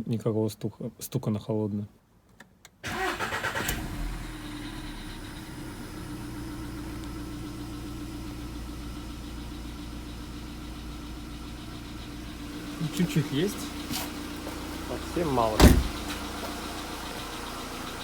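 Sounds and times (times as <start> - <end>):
car engine starting and idling: 2.8 - 18.0
engine tapping: 5.8 - 18.0.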